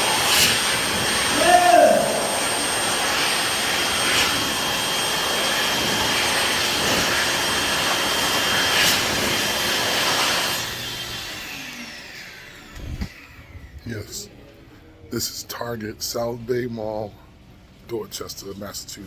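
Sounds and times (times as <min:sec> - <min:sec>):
electric hand dryer blowing: 0:00.0 - 0:13.7.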